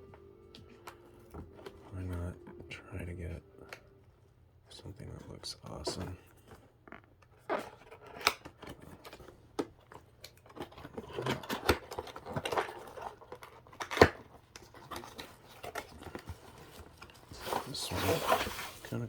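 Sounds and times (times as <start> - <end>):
packaging rustling and scraping: 0.0 - 4.0, 4.7 - 19.0.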